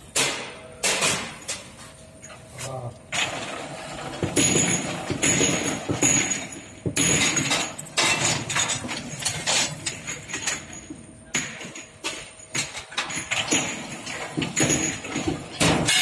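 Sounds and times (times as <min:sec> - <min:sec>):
glass bottles clinking: 0:04.2 - 0:16.0.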